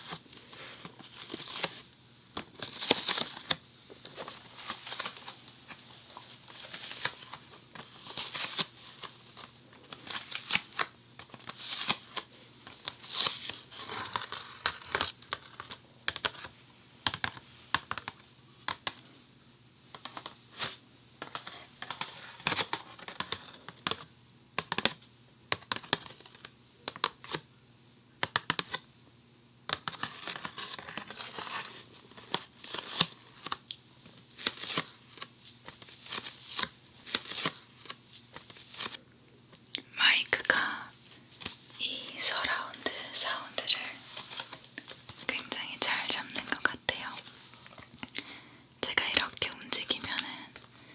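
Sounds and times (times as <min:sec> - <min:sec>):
plastic crinkling and tearing: 0:02.5 - 0:16.4, 0:29.9 - 0:39.0.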